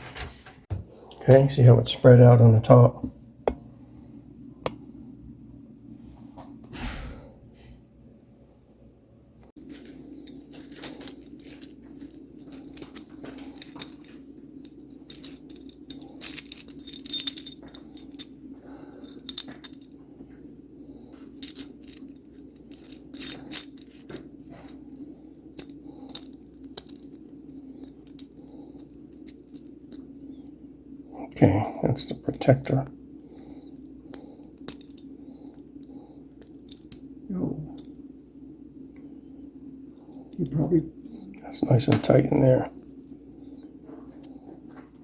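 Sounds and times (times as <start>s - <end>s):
steady low hum: 0.0s - 45.0s
metal parts clinking and rattling: 9.6s - 20.0s, 21.1s - 30.5s, 33.5s - 37.1s, 37.7s - 38.0s, 41.4s - 45.0s.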